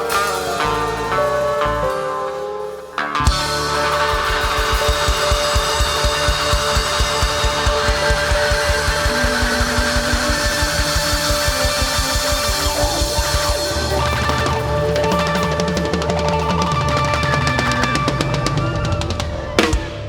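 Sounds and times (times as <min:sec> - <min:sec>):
electric guitar: 0:00.0 - 0:20.0
live rock band: 0:00.0 - 0:20.0
fast drum beat: 0:03.2 - 0:20.0.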